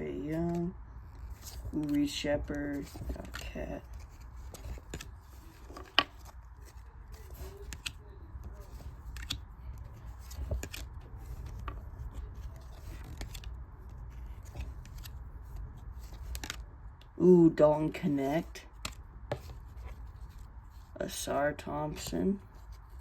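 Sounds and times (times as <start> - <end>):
cards sliding against cards: 0.5 - 16.6.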